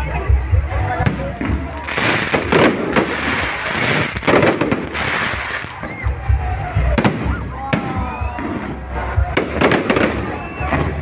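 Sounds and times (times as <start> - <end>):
fireworks bangs and crackling: 0.8 - 11.0
deep fireworks booms: 1.0 - 5.8, 6.8 - 11.0.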